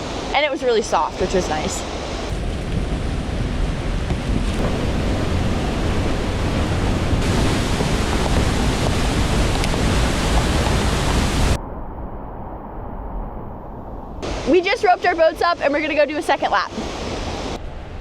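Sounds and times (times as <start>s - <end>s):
waterfall rushing into pool: 0.0s - 2.6s, 4.5s - 11.6s, 14.2s - 17.6s.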